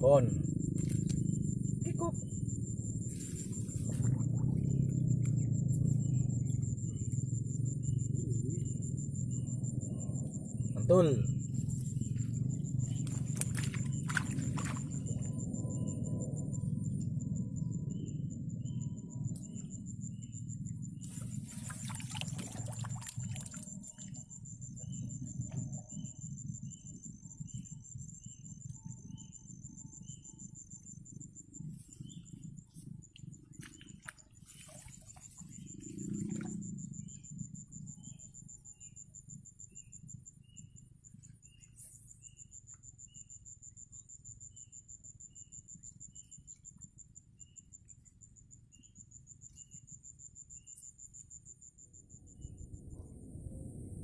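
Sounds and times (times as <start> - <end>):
low rumble: 0.0 - 38.8, 51.9 - 54.0
insects trilling: 0.0 - 54.0.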